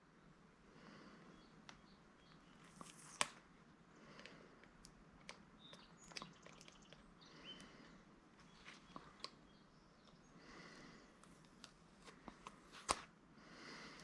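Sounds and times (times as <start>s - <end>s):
small parts clicking and tapping: 4.2s - 7.7s.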